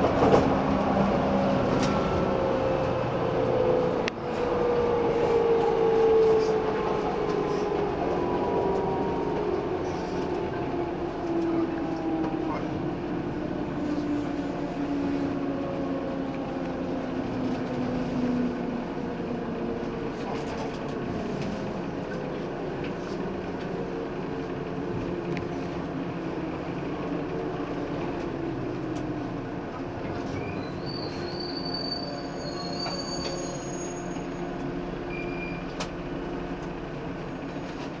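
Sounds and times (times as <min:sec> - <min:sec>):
train motor hum: 0:00.0 - 0:30.4
train wheels on rails: 0:00.0 - 0:38.0
high brake squeals: 0:30.3 - 0:35.8.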